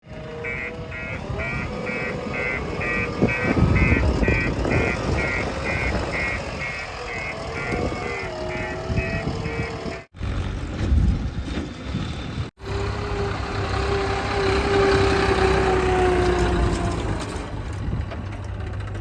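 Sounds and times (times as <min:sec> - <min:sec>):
diesel engine running: 0:00.0 - 0:19.0
reversing alarm beeping: 0:00.5 - 0:10.0.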